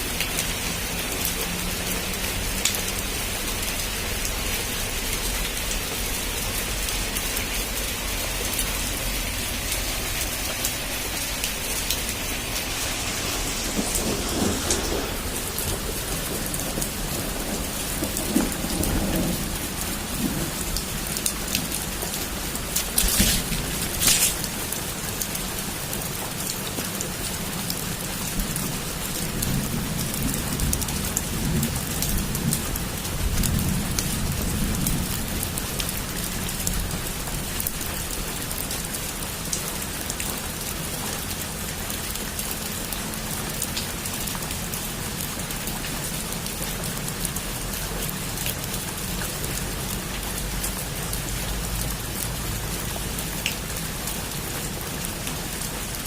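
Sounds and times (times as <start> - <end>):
heavy rain on a roof: 0.0 - 56.0
low rumble of thunder: 11.7 - 24.8, 28.0 - 37.7.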